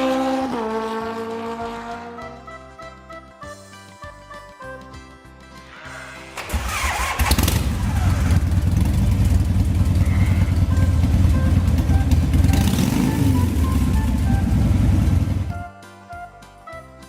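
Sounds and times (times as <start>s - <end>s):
vehicle engine starting and running: 0.0s - 2.3s, 5.6s - 15.6s.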